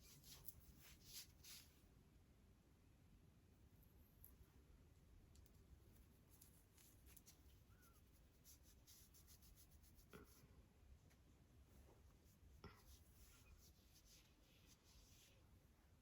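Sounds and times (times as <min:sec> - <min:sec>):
faint scratchy rustling: 0:00.0 - 0:01.9, 0:05.4 - 0:16.0.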